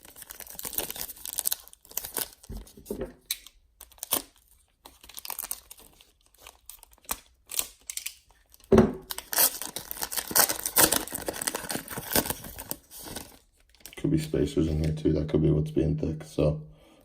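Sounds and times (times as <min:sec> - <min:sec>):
foil wrapper crinkling and tearing: 0:00.0 - 0:14.0
thump: 0:08.7 - 0:09.0.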